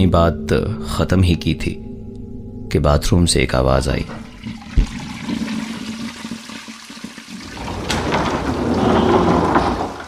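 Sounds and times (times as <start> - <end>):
toilet flushing: 4.2 - 10.0.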